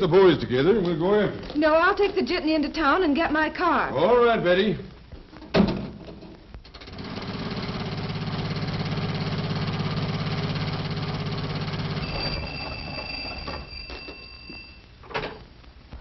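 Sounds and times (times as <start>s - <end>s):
faint high steady tones: 11.7s - 15.9s.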